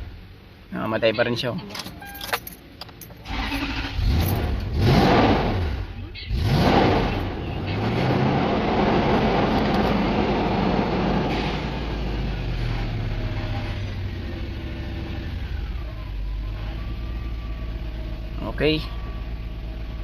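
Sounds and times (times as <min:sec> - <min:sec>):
car engine revs easing to idle: 0:03.3 - 0:15.9.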